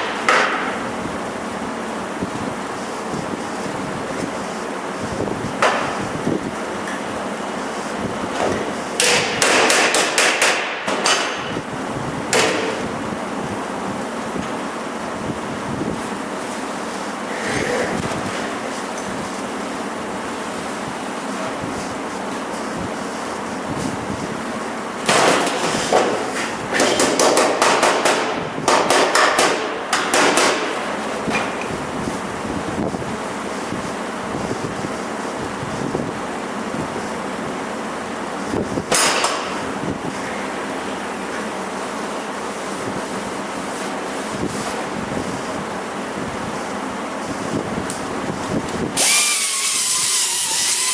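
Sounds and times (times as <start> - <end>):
hammer striking metal: 9.0 - 11.4
hammer striking sheet metal: 9.0 - 11.5, 25.1 - 30.8.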